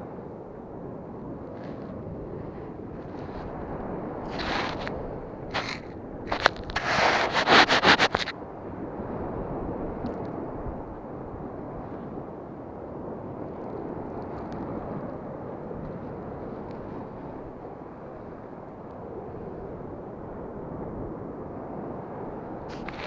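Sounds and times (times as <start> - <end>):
sea surf breaking on shore: 2.0 - 8.4.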